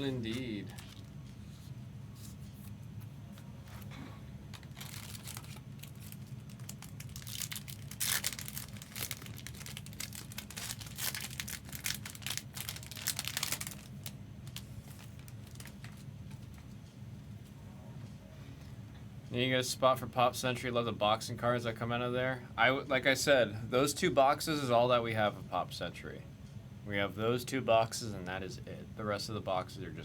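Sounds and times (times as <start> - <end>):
steady low hum: 0.0 - 30.0
wrapper tearing and crinkling: 0.2 - 1.2, 4.5 - 16.4.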